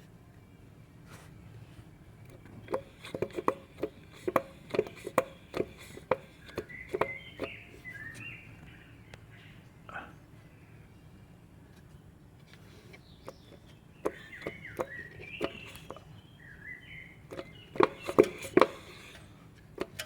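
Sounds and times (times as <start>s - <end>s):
metallic clicks of engine parts: 2.2s - 8.3s, 12.4s - 16.2s, 17.2s - 20.0s
bird chirping: 2.2s - 11.4s, 12.6s - 19.9s.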